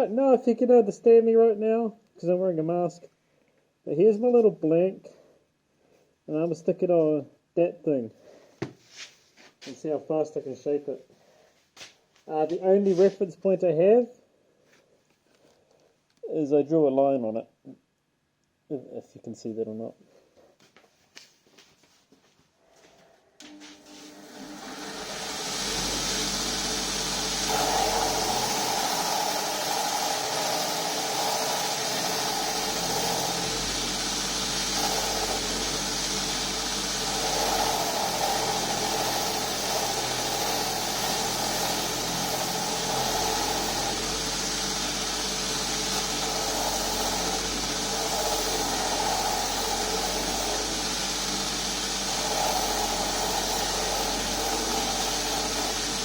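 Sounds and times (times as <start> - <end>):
power grinder grinding: 23.4 - 56.0.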